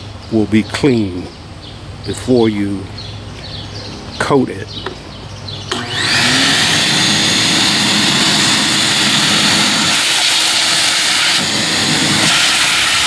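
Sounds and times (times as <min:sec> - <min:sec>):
vacuum cleaner running: 0:05.7 - 0:13.0.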